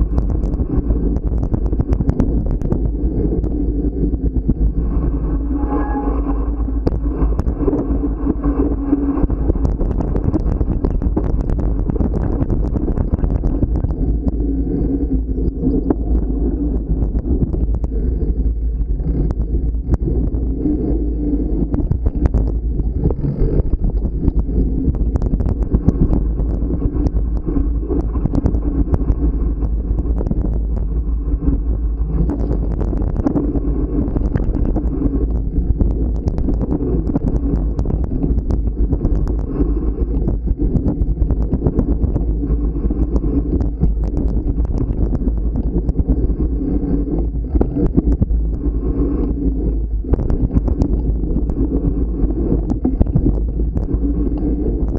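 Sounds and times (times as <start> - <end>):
wind on microphone: 0.0 - 54.9.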